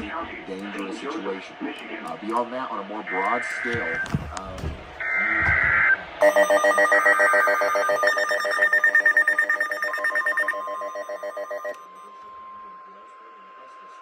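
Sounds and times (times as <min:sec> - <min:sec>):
fast-warbling electronic alarm: 0:05.0 - 0:12.1.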